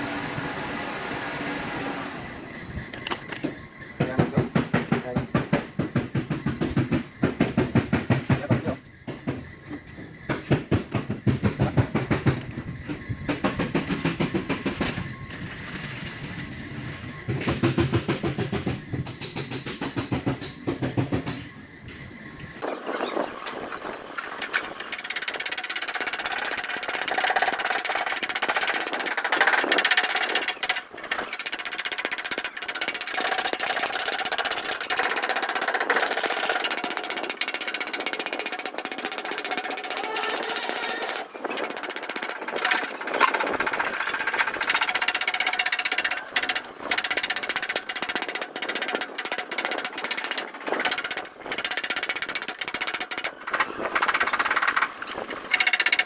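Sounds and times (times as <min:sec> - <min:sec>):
power tool hammering: 0:03.0 - 0:09.7, 0:10.3 - 0:12.6, 0:25.0 - 0:56.0
high-pitched steady tool noise: 0:22.7 - 0:56.0.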